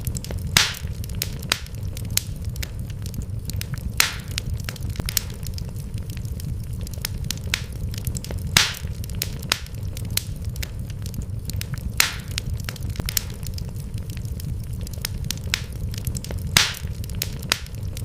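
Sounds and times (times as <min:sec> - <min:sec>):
loud fire pops: 0:00.0 - 0:18.0
wood fire crackling: 0:00.0 - 0:18.0.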